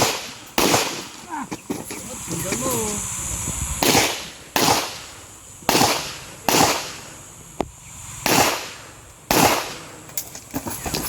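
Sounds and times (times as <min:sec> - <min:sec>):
pistol shots with echo: 0:00.0 - 0:01.2, 0:03.8 - 0:05.1, 0:05.7 - 0:07.1, 0:08.2 - 0:09.9
sharp crack: 0:00.0 - 0:01.4, 0:03.8 - 0:10.8.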